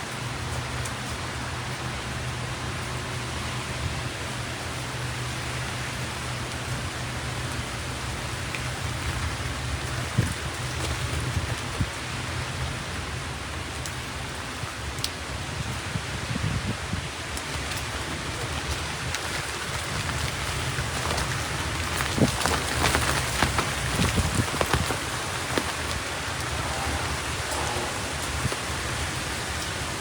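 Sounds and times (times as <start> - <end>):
heavy rain downpour: 0.0 - 30.0.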